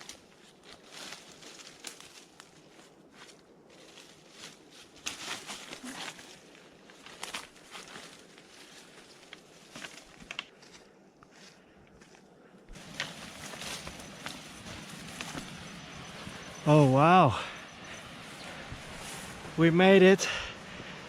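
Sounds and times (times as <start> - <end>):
footsteps crunching on trail: 0.0 - 21.0.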